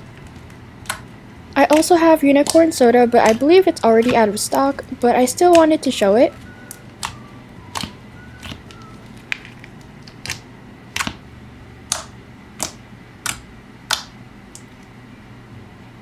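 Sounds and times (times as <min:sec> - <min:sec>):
slime popping clicks: 0:06.7 - 0:08.6, 0:11.9 - 0:14.7.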